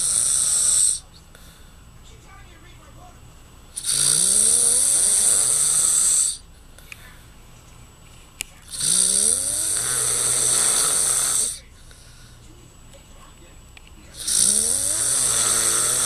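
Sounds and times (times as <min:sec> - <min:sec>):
man snoring loudly: 0:00.0 - 0:01.1, 0:03.8 - 0:06.4, 0:08.7 - 0:11.6, 0:14.2 - 0:16.0.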